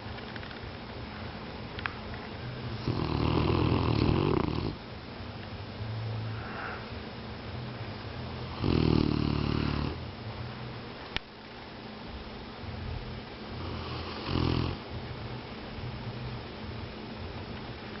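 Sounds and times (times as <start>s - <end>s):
dog snoring: 2.6s - 4.8s, 8.4s - 10.0s, 13.5s - 14.8s.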